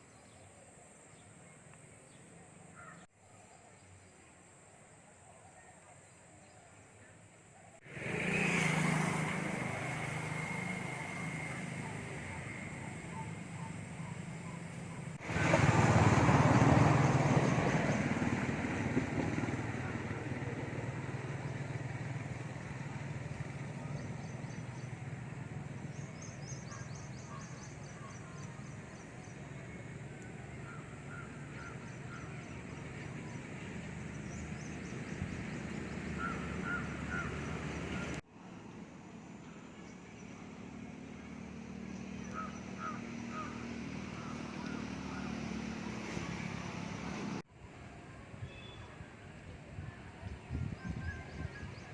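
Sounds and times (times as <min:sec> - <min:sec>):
low traffic hum: 0:07.2 - 0:51.9
motor vehicle passing: 0:07.8 - 0:47.4.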